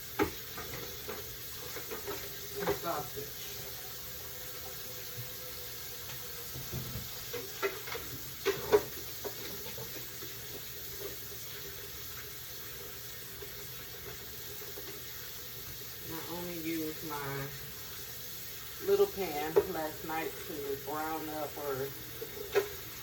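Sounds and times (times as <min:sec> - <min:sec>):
steady background hiss: 0:14.6 - 0:23.0.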